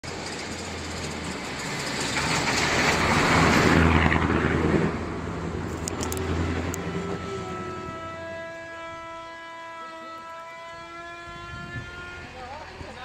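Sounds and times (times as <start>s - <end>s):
bus engine droning: 0.0s - 9.3s
road noise: 0.0s - 13.0s.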